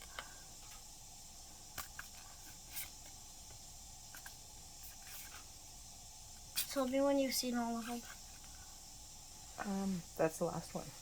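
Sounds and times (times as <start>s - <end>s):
steady low hiss: 0.0s - 11.0s
trading cards sliding and shuffling: 1.7s - 5.5s.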